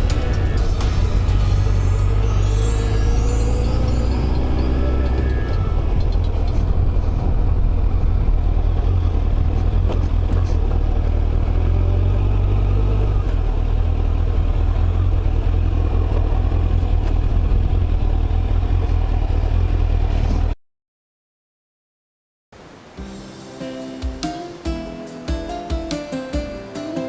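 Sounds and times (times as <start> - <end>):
motorcycle engine rumble: 0.0 - 20.6.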